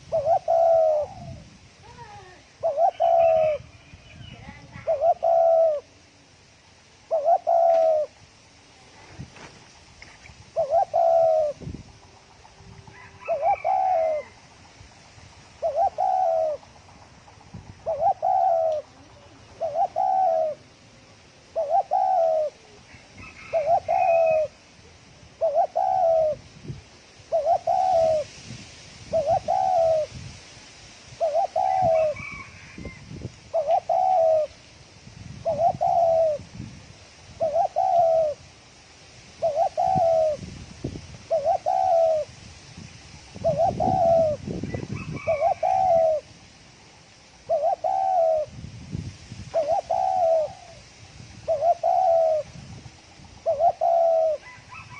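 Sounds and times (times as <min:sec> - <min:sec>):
dove cooing: 0:00.0 - 0:06.0, 0:07.1 - 0:08.2, 0:10.5 - 0:14.5, 0:15.6 - 0:24.6, 0:25.4 - 0:26.5, 0:27.2 - 0:28.3, 0:29.1 - 0:30.2, 0:31.1 - 0:34.6, 0:35.4 - 0:36.5, 0:37.4 - 0:38.5, 0:39.4 - 0:40.5, 0:41.3 - 0:42.3, 0:43.4 - 0:46.4, 0:47.4 - 0:48.6, 0:49.5 - 0:50.8, 0:51.4 - 0:52.6, 0:53.2 - 0:54.9.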